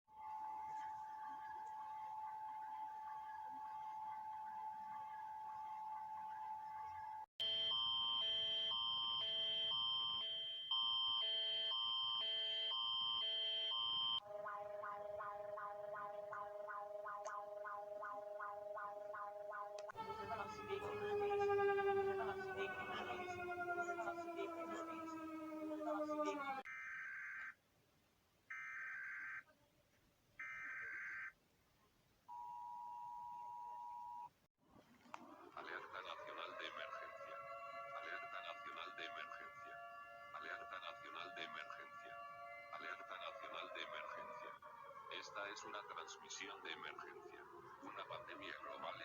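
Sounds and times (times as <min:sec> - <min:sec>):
electronic alarm chords alternating: 0:07.4 - 0:26.7
quick pulsing alarm tone: 0:20.0 - 0:26.6.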